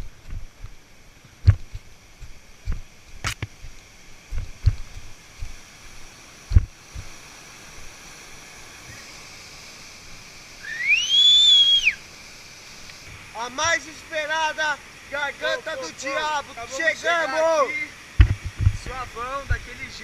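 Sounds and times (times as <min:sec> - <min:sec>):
faint steady hiss: 0:00.0 - 0:20.0
low thumps and knocks: 0:01.4 - 0:05.6, 0:06.5 - 0:07.2, 0:18.2 - 0:19.7.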